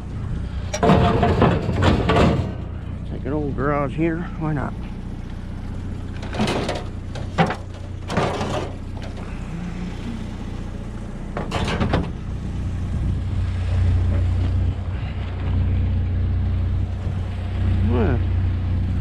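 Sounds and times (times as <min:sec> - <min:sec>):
pickup engine idling: 0:00.0 - 0:19.0
loud bangs: 0:00.8 - 0:03.2.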